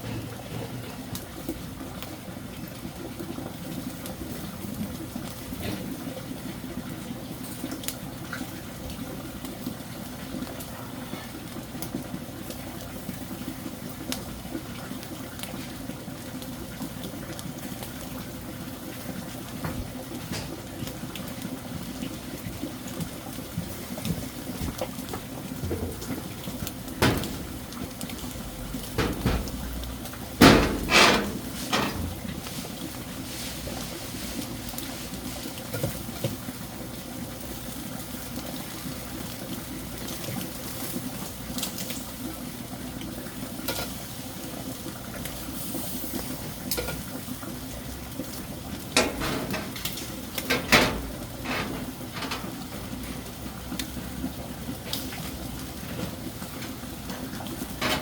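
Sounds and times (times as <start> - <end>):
running water: 8.1 - 58.0
loud knocks: 26.9 - 27.8, 28.4 - 32.3.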